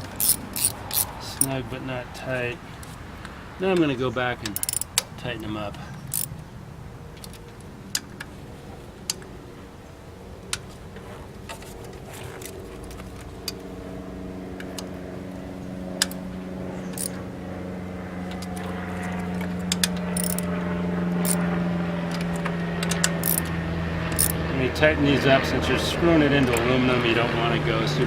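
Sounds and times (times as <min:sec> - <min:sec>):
socket ratchet clicking: 0:00.0 - 0:01.5, 0:04.4 - 0:05.1, 0:06.1 - 0:06.3, 0:16.9 - 0:17.2, 0:19.7 - 0:20.5, 0:21.2 - 0:21.4, 0:22.2 - 0:23.5, 0:24.1 - 0:24.4
low hum: 0:00.0 - 0:28.0.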